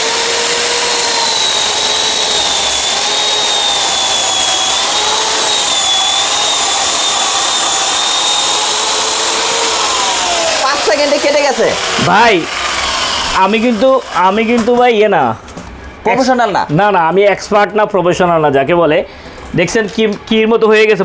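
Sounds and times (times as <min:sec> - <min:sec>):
chainsaw cutting wood: 0:00.0 - 0:14.7.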